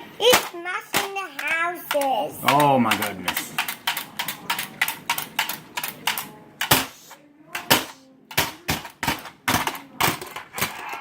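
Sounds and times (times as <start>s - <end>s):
plastic toys clacking: 0.2s - 11.0s.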